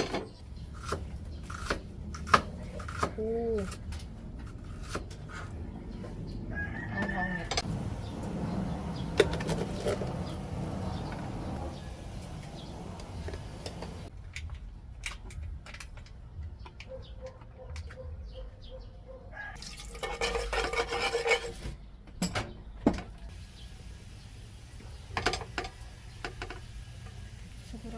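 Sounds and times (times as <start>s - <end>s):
utensils scraping cookware: 19.8s - 21.8s.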